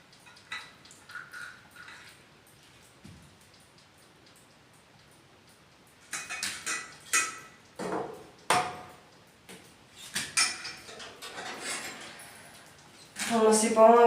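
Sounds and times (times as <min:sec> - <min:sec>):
kitchenware clinks and knocks: 0:10.1 - 0:12.3.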